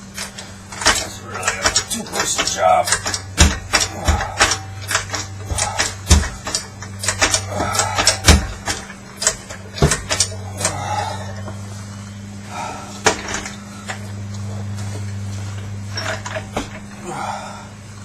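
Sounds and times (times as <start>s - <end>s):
hand tools clicking on metal: 0.0s - 11.6s
steady low hum: 0.0s - 18.0s.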